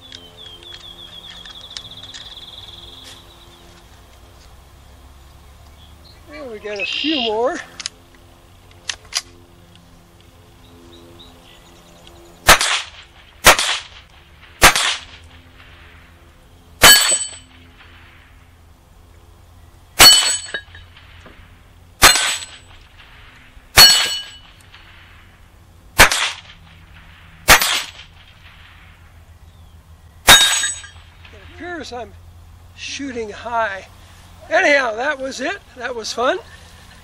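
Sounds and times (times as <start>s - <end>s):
rifle shots: 12.4s - 15.9s, 16.8s - 18.1s, 20.0s - 21.2s, 22.0s - 25.3s, 26.0s - 29.1s
steel target ringing: 16.8s - 17.6s, 20.0s - 21.0s, 22.0s - 22.8s, 23.8s - 24.6s, 27.5s - 28.1s, 30.2s - 31.3s.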